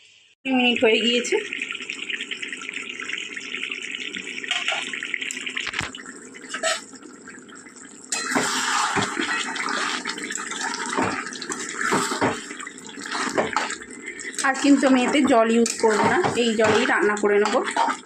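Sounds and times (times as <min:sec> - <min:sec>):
curry bubbling and sizzling: 0:00.1 - 0:18.0
utensils knocking against pan: 0:08.1 - 0:09.4, 0:10.9 - 0:12.5, 0:13.2 - 0:13.8, 0:14.4 - 0:17.9.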